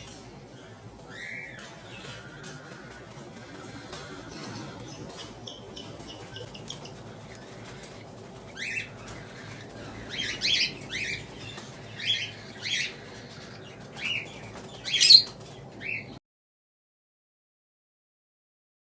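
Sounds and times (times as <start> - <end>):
cockatiels calling: 1.1 - 16.1.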